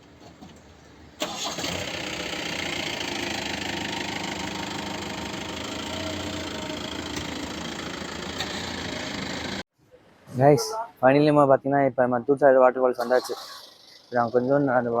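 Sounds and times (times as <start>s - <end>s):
road noise: 0.0s - 10.8s
jeep engine running: 1.2s - 9.6s.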